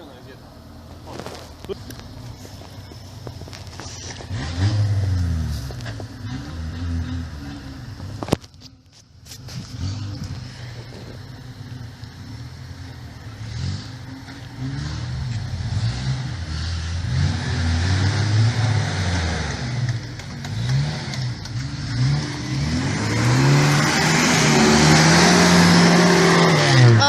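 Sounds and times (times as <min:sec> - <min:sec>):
engine revving under load: 0:04.1 - 0:08.2, 0:09.6 - 0:11.8, 0:13.3 - 0:27.0.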